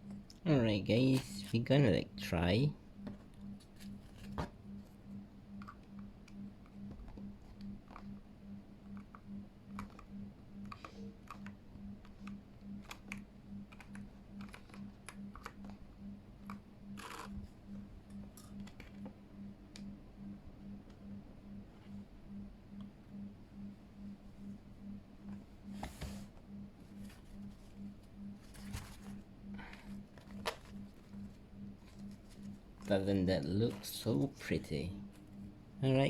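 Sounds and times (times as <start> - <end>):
faint pulsing low hum: 0.0 - 36.0
keyboard keycaps clicking: 12.2 - 15.8.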